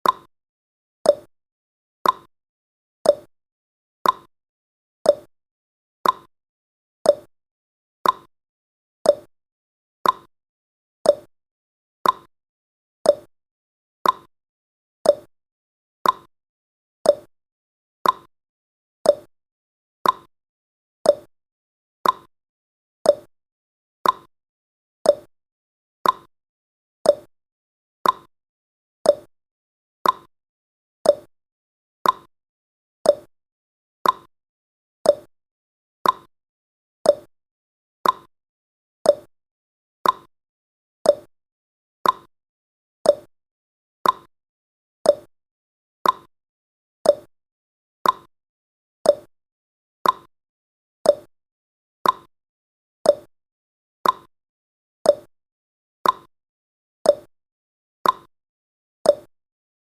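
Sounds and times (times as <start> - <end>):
timer clicking: 0.0 - 0.3, 1.1 - 1.3, 2.0 - 2.3, 3.1 - 3.3, 4.0 - 4.3, 5.1 - 5.3, 6.0 - 6.3, 7.1 - 7.3, 8.0 - 8.3, 9.1 - 9.3, 10.0 - 10.3, 11.1 - 11.3, 12.0 - 12.3, 13.1 - 13.3, 14.0 - 14.3, 15.1 - 15.3, 16.0 - 16.3, 17.1 - 17.3, 18.0 - 18.3, 19.1 - 19.3, 20.0 - 20.3, 21.0 - 21.3, 22.0 - 22.3, 23.1 - 23.3, 24.0 - 24.3, 25.1 - 25.3, 26.0 - 26.3, 27.1 - 27.3, 28.0 - 28.3, 29.0 - 29.3, 30.0 - 30.3, 31.0 - 31.3, 32.0 - 32.3, 33.0 - 33.3, 34.0 - 34.3, 35.0 - 35.3, 36.0 - 36.3, 37.0 - 37.3, 38.0 - 38.3, 39.1 - 39.3, 40.0 - 40.3, 41.0 - 41.3, 42.0 - 42.3, 43.0 - 43.3, 44.0 - 44.3, 45.1 - 45.3, 46.0 - 46.3, 47.0 - 47.3, 48.0 - 48.3, 49.1 - 49.3, 50.0 - 50.3, 51.1 - 51.3, 52.0 - 52.3, 53.1 - 53.3, 54.0 - 54.3, 55.1 - 55.3, 56.0 - 56.3, 57.1 - 57.3, 58.0 - 58.3, 59.1 - 59.3.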